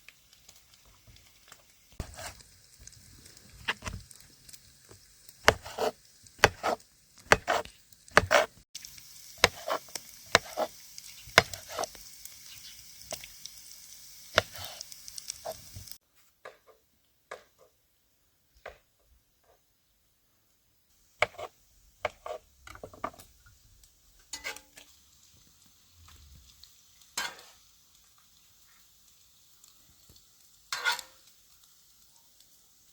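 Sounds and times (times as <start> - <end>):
food sizzling in a pan: 0.0 - 16.0, 20.8 - 32.9
utensil stirring and scraping: 2.0 - 2.4, 5.4 - 8.6, 9.4 - 12.0, 14.4 - 15.8, 21.2 - 23.2.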